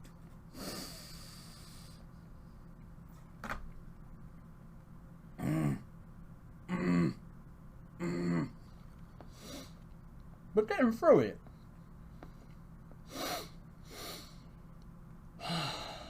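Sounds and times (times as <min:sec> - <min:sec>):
man humming mmm: 0:05.4 - 0:05.9, 0:06.7 - 0:07.2, 0:08.0 - 0:08.6.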